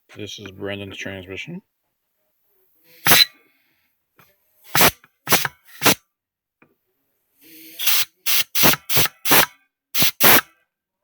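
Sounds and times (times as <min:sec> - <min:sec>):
compressed air blasts from nozzle: 0:03.1 - 0:03.3, 0:04.7 - 0:06.0, 0:07.8 - 0:10.5.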